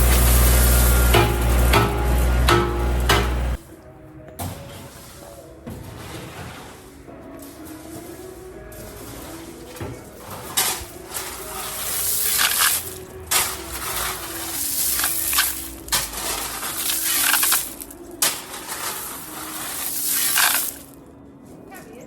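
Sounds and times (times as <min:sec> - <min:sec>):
crushed stone crunching: 0:00.0 - 0:03.6, 0:07.4 - 0:21.0.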